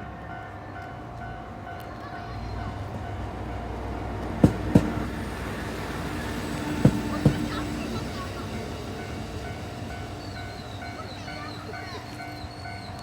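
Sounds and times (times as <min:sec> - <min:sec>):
railcar rumbling along track: 0:00.0 - 0:13.0
wheels clacking over rail joint: 0:04.2 - 0:05.2, 0:06.5 - 0:09.6.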